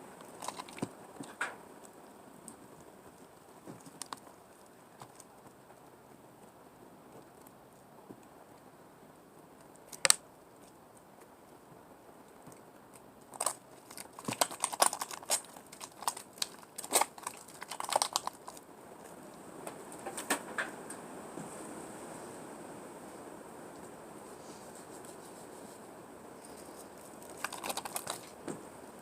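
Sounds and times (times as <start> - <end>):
slime clicking and crackling: 0.2 - 1.4, 9.8 - 10.2, 12.9 - 18.6, 27.2 - 28.4.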